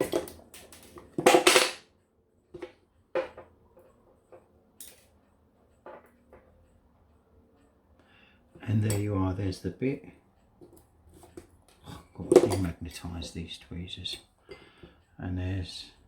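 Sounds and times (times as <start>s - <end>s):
metal tools and clock parts clinking: 8.6s - 9.9s.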